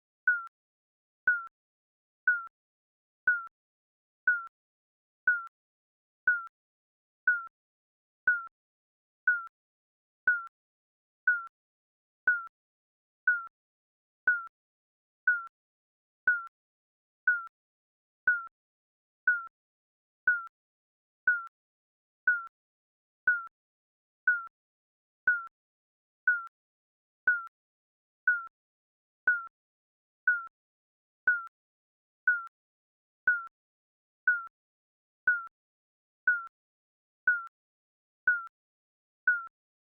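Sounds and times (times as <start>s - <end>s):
short electronic timer beeps: 39.3s - 39.5s.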